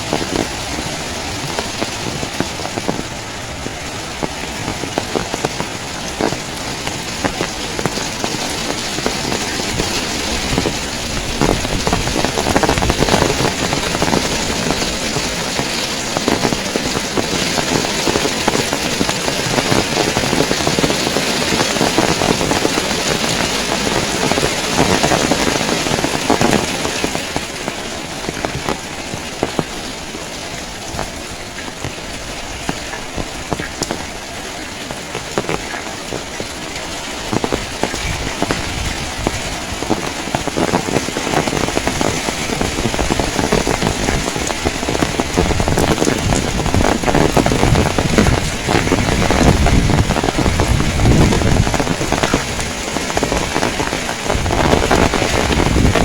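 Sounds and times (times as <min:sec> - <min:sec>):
heavy rain pattering: 0:00.0 - 0:56.0
low rumble of strong wind: 0:00.0 - 0:56.0.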